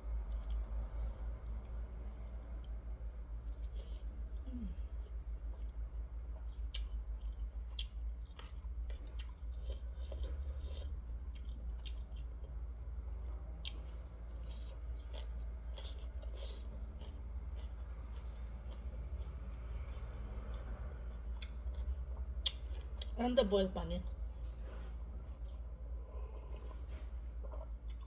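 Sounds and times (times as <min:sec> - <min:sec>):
person chewing: 0:00.0 - 0:23.2, 0:24.1 - 0:28.0
steady low hum: 0:00.0 - 0:28.0.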